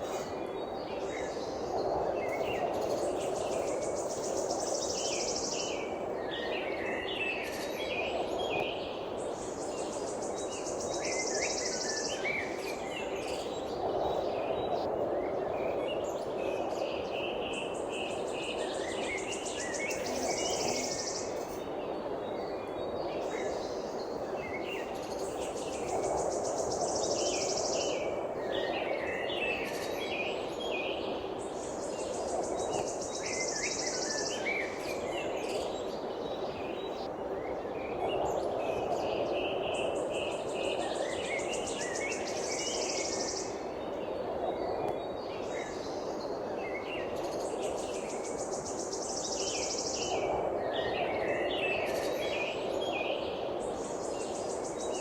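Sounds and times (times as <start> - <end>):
birds chirping and calling: 19.8 - 21.6.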